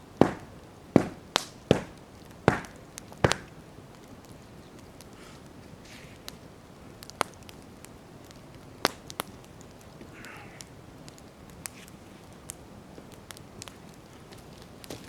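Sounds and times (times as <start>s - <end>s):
campfire crackling and popping: 0.0s - 15.0s
soft hiss: 0.0s - 15.0s.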